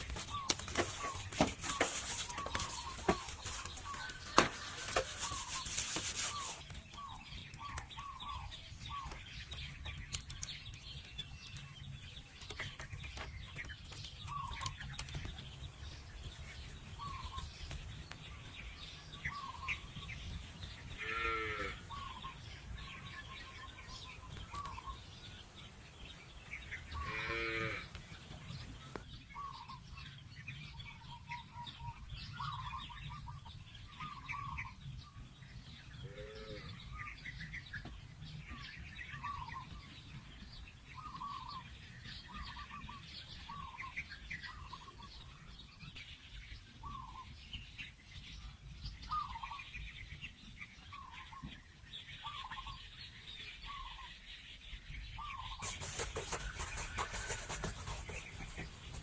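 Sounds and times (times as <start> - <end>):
small birds chirping: 0.0 - 59.0
livestock animal calling: 20.9 - 22.4, 26.8 - 28.1, 36.0 - 37.0.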